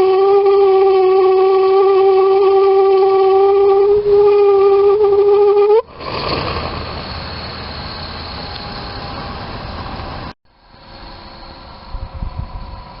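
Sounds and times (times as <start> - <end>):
heater whistle-like hoot: 0.0 - 5.9
burner rushing: 5.8 - 10.3.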